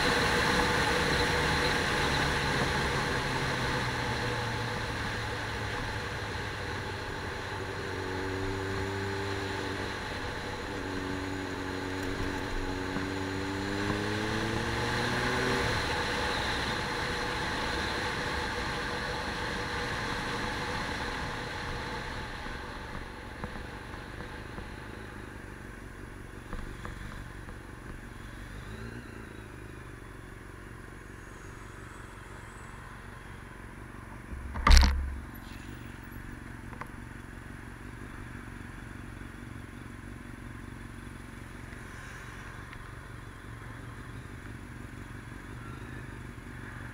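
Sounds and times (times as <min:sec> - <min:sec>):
vehicle engine accelerating: 0:00.0 - 0:46.9.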